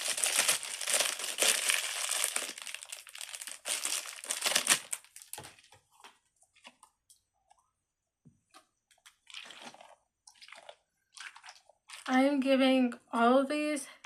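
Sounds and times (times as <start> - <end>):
thin plastic crinkling: 0.0 - 6.8.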